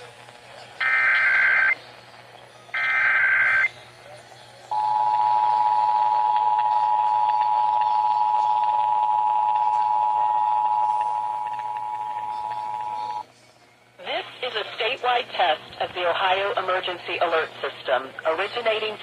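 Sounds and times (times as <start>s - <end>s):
digital header data tones: 0.8s - 1.8s.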